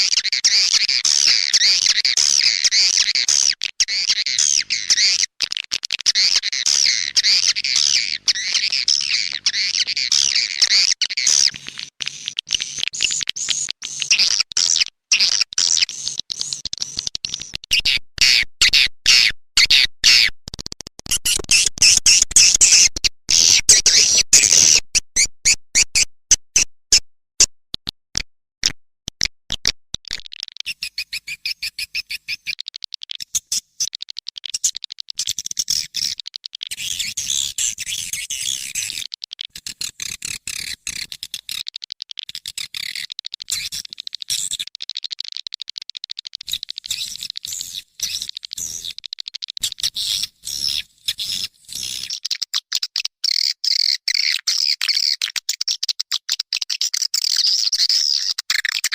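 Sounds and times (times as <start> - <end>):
high twittering chirps: 6.2 - 11.5
rapid sharp clicks: 32.5 - 35.3, 36.0 - 36.7, 38.7 - 47.5, 48.2 - 49.6.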